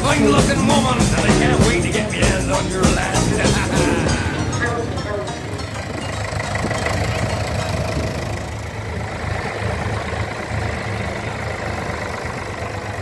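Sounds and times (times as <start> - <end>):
tractor engine idling: 0.0 - 13.0.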